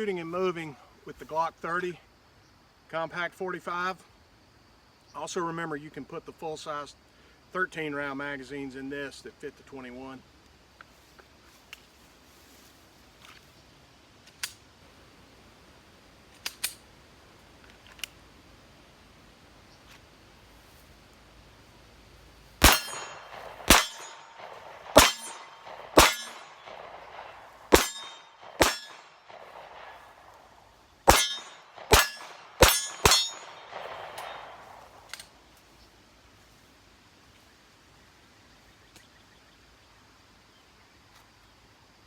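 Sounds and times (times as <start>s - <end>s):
steel target clanging: 22.6s - 29.1s, 31.1s - 34.8s
pistol shots: 22.6s - 30.2s, 31.1s - 35.0s.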